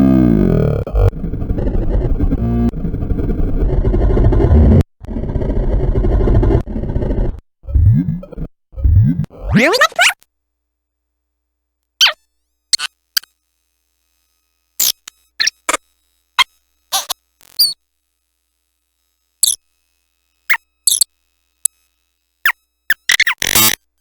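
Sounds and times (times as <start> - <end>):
toy squeaky chirps and blips: 14.8 - 15.8, 17.0 - 17.8, 22.9 - 23.5.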